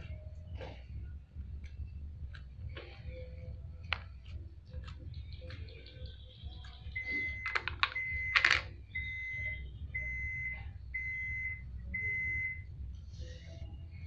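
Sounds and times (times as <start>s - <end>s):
electronic beeps: 5.2s - 12.7s.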